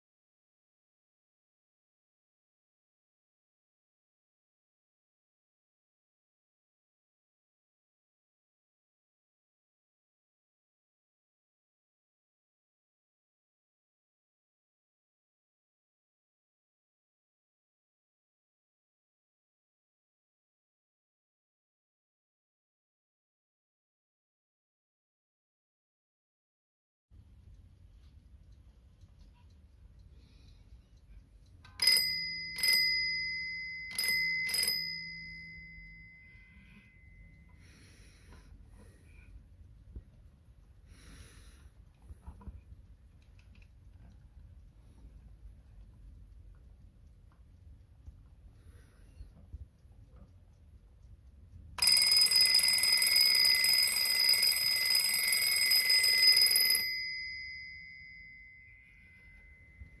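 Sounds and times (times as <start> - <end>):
alarm clock bell strikes: 31.7 - 38.0, 51.8 - 60.0.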